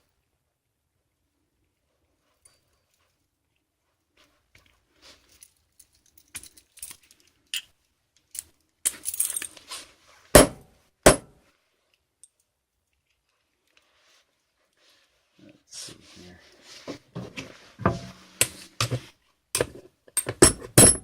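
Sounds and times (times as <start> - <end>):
small hard parts clinking: 5.2 - 9.7, 19.6 - 21.0
loud sharp knocks: 10.4 - 11.3.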